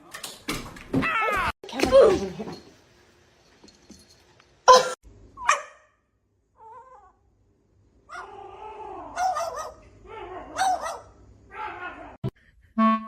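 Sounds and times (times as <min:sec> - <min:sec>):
dog barking: 0:05.4 - 0:05.9, 0:09.2 - 0:09.8, 0:10.5 - 0:11.2.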